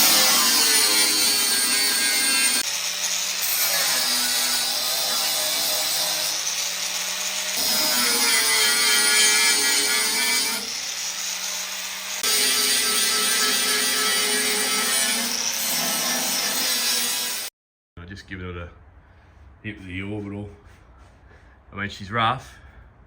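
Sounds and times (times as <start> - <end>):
power sander on sheet steel: 0.0 - 17.5.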